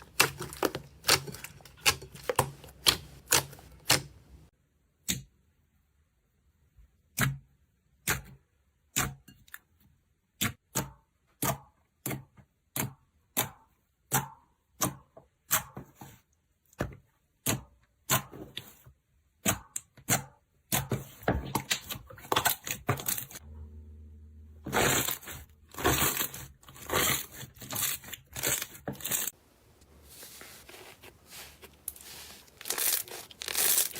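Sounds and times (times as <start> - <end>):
slime clicking and crackling: 0.0 - 4.4, 31.9 - 33.9.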